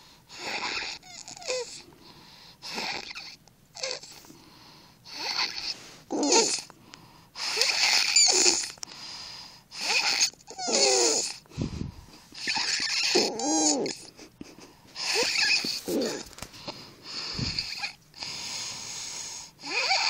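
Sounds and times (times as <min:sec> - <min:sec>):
child snoring: 0:00.3 - 0:01.9, 0:02.6 - 0:04.2, 0:05.1 - 0:06.7, 0:07.4 - 0:08.8, 0:09.7 - 0:11.4, 0:12.4 - 0:14.1, 0:15.0 - 0:16.3, 0:17.1 - 0:20.0.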